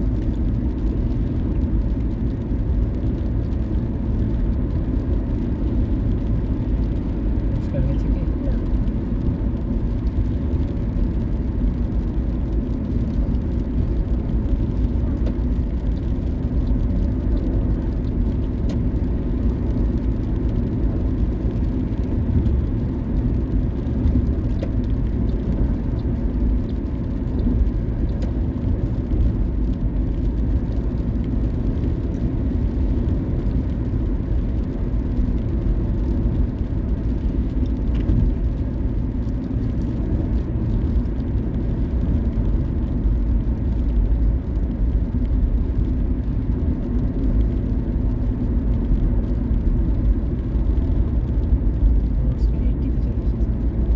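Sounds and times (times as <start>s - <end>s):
car engine running: 0.0s - 53.9s
tyres rumbling on road: 0.0s - 53.9s.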